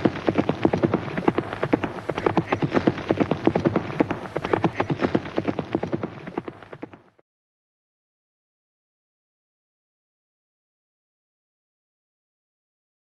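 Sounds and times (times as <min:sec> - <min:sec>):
horse hooves galloping: 0:00.0 - 0:07.2.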